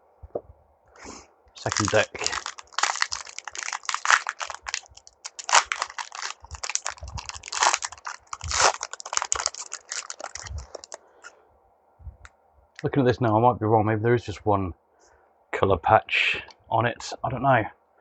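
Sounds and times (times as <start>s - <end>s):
foil wrapper crinkling: 1.6s - 11.0s.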